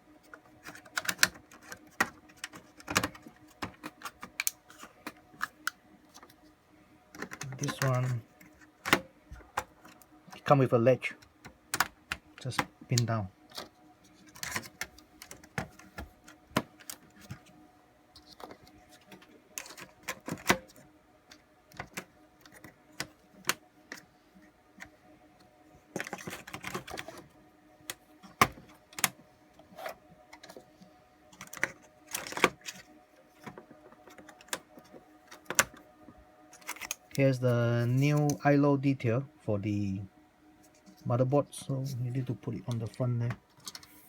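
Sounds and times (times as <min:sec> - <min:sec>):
faint steady hum: 0:00.0 - 0:44.0
plastic and metal parts clicking: 0:00.3 - 0:06.4, 0:07.1 - 0:10.5, 0:11.2 - 0:17.5, 0:18.2 - 0:24.0, 0:26.0 - 0:27.3, 0:31.3 - 0:35.8, 0:36.5 - 0:37.2, 0:42.7 - 0:43.9.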